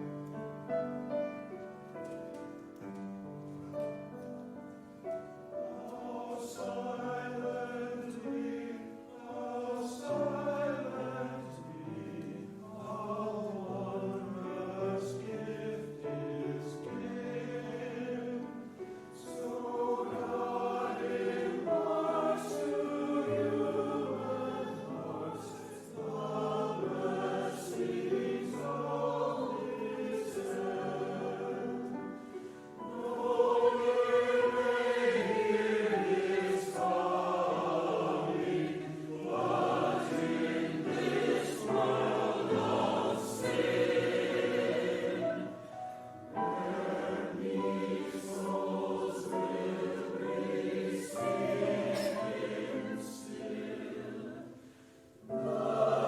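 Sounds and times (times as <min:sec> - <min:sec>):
church choir singing: 0:00.0 - 0:56.0.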